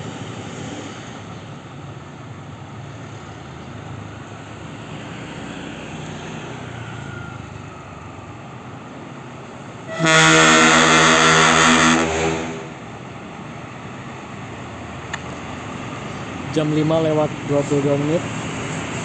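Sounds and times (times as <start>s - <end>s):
bus engine passing: 0.0s - 19.0s
bus air horn blast: 9.9s - 12.8s.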